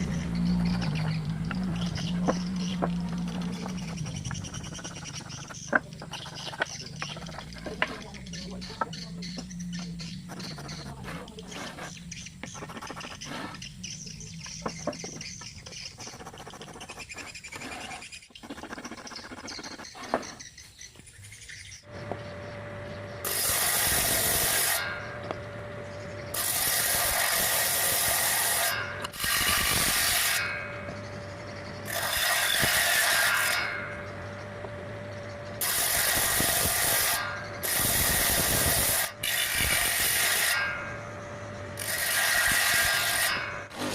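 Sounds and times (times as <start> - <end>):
saw blade cutting wood: 0.5 - 13.7, 14.6 - 20.5, 23.2 - 34.5, 35.6 - 43.9
handling clicks and scraping: 0.6 - 21.2
table saw motor humming: 21.9 - 43.9.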